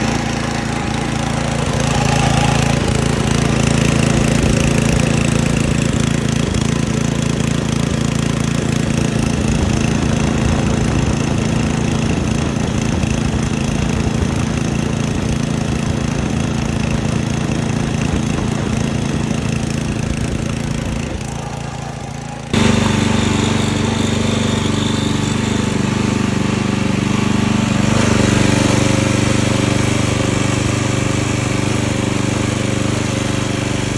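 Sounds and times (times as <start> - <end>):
mower engine running: 0.0 - 33.9.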